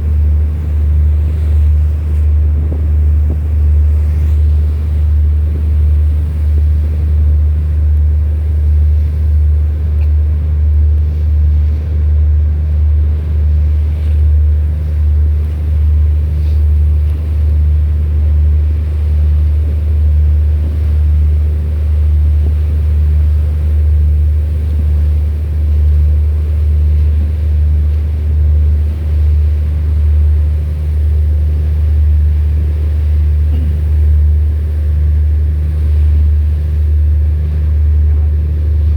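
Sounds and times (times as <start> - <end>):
ship engine drone: 0.0 - 38.9.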